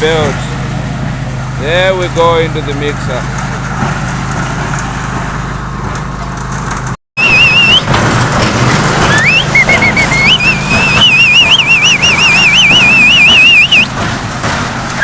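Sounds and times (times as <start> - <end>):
concrete mixer and conveyor humming: 0.0 - 15.0
high warbling tone: 7.2 - 7.9, 9.0 - 13.9.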